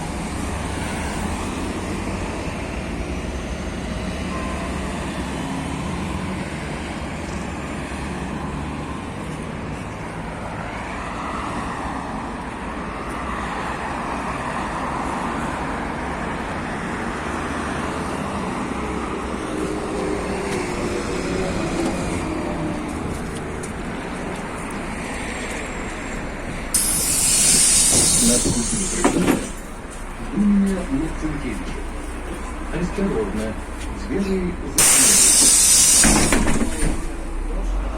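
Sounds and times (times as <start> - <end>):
bus engine and tyre noise: 0.0 - 37.9
compressed air hiss: 26.7 - 29.7, 34.8 - 36.7.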